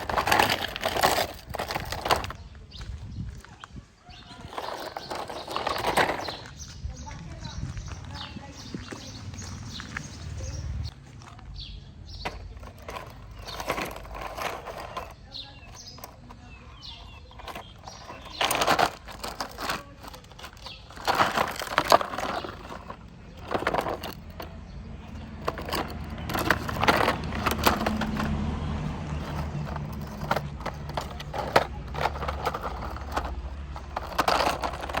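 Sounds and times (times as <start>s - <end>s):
rocks clattering and grinding: 0.0s - 10.1s, 12.1s - 35.0s
engine running: 17.1s - 35.0s.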